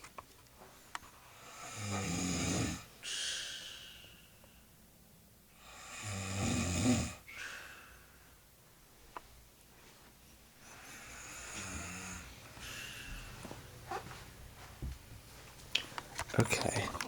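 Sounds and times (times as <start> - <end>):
woman snoring: 1.3 - 3.6, 5.6 - 7.6, 10.7 - 13.0
breathy out-breath: 3.0 - 4.8, 7.3 - 8.4, 10.7 - 13.4.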